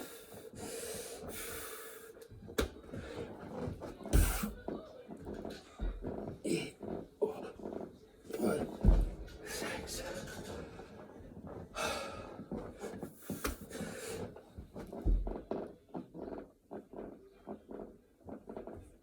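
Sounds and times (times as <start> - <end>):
body thudding on floor: 4.1 - 4.6.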